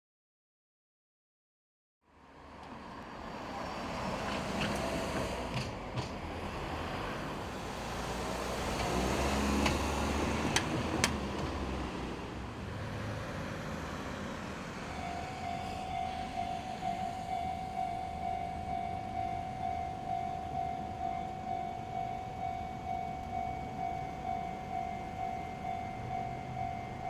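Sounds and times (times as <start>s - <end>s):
vehicles passing: 2.1s - 27.0s
crossing warning alarm tone: 14.6s - 27.0s.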